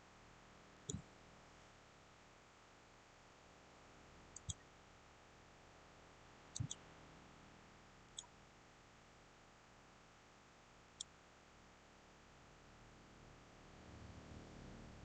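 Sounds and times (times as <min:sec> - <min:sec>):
computer mouse buttons clicking: 0:04.4 - 0:04.6, 0:06.6 - 0:06.8.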